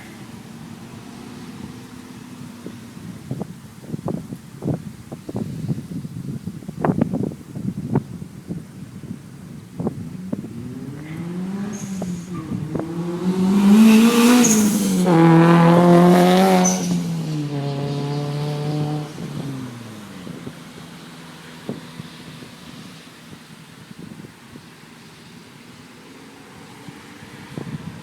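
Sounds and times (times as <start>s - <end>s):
car accelerating past: 10.1s - 23.0s.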